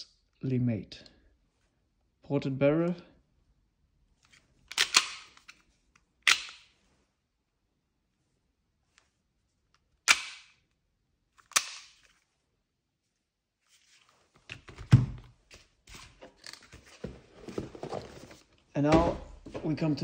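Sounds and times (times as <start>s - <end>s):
handling knocks and thumps: 16.2s - 20.0s.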